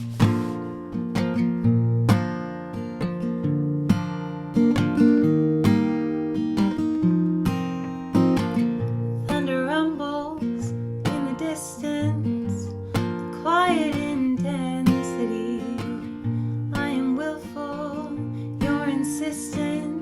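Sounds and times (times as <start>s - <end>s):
acoustic guitar strumming: 0.0s - 20.0s
person singing: 16.7s - 20.0s.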